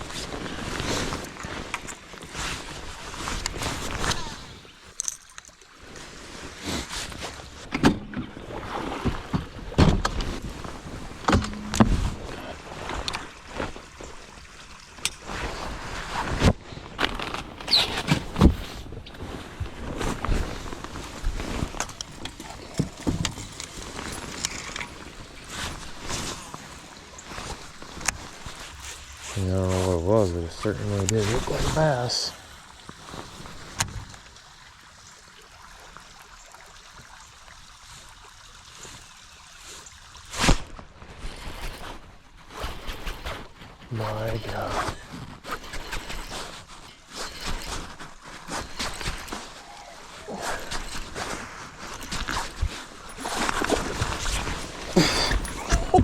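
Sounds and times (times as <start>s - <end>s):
water noise: 0.0s - 56.0s
wind: 0.0s - 56.0s
handling knocks and bumps: 7.6s - 13.7s, 16.2s - 29.9s, 44.1s - 56.0s
brief squeak: 17.7s - 18.0s.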